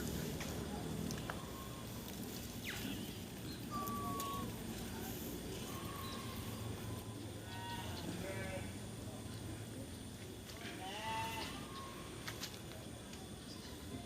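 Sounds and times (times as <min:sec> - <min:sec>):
falling chirp: 0:01.4 - 0:04.6
thin whistle-like animal calls: 0:01.4 - 0:04.6, 0:05.6 - 0:07.8.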